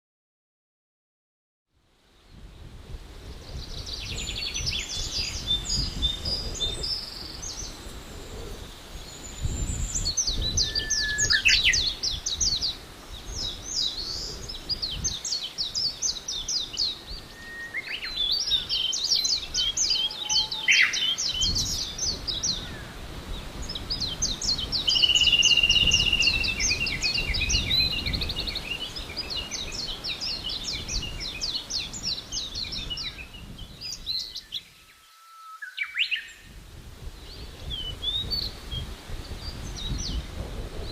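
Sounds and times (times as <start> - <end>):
songbirds singing: 2.2 - 40.9.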